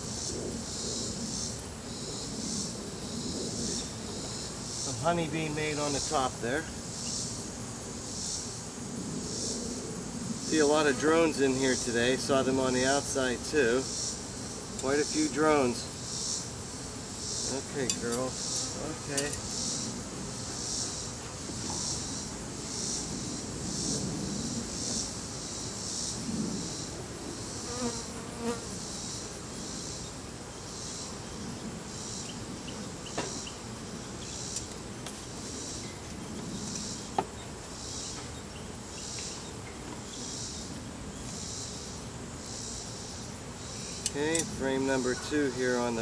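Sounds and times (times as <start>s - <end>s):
high-pitched insect call pulsing: 0.0s - 34.8s
bees buzzing: 0.0s - 46.0s
clicks and taps of hive tools: 17.8s - 19.5s.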